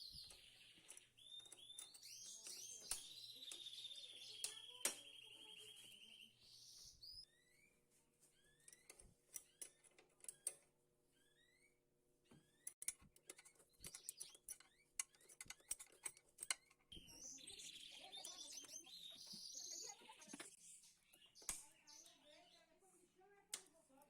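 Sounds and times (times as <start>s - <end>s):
bird chirping: 0.0s - 22.9s
faint small clicks and taps: 12.3s - 17.0s, 23.4s - 24.0s.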